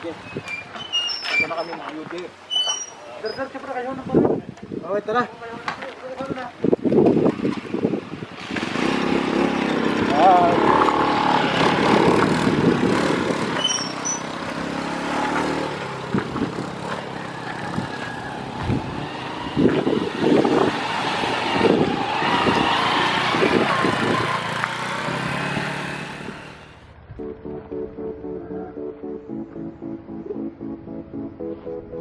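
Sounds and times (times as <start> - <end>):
wind noise on microphone: 3.8 - 10.6, 11.5 - 14.0, 17.6 - 24.5
motorcycle engine: 7.3 - 27.3
music: 27.2 - 32.0.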